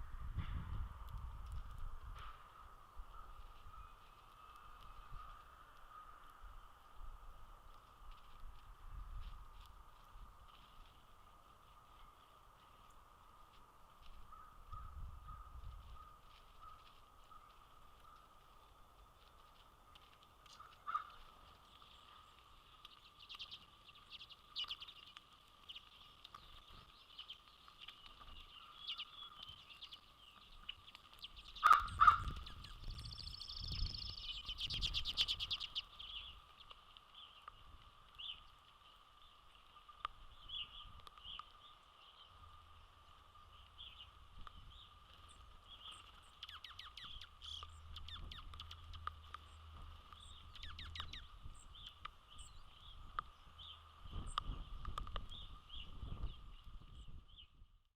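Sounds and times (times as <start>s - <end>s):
birds chirping and calling: 14.0s - 42.6s, 43.3s - 57.6s.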